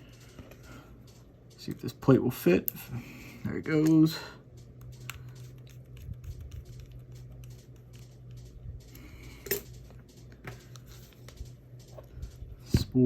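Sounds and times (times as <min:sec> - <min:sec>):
small parts clicking and tapping: 0:03.7 - 0:12.5
low hum: 0:04.2 - 0:13.0.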